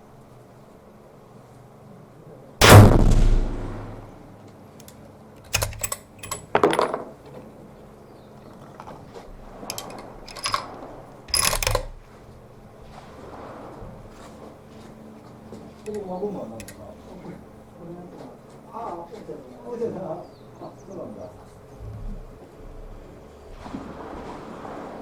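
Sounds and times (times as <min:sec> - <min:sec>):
rifle shot: 0:02.6 - 0:04.2
rifle handling clicks: 0:04.8 - 0:07.1, 0:09.7 - 0:10.7, 0:11.3 - 0:12.1, 0:15.8 - 0:16.8.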